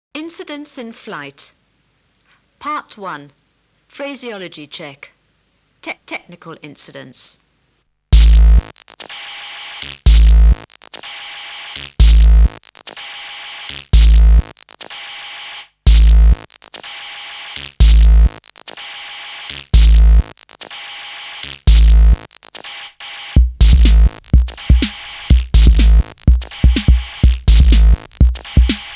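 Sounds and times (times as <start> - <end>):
electronic music with bass hits: 8.2 - 8.7, 10.1 - 10.6, 12.0 - 12.6, 14.0 - 14.5, 15.9 - 16.4, 17.8 - 18.3, 19.8 - 20.2, 21.7 - 22.2, 23.4 - 28.9.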